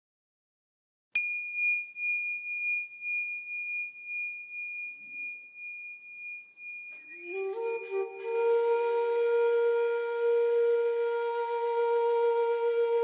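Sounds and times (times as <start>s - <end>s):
small bell ringing: 1.2s - 8.2s.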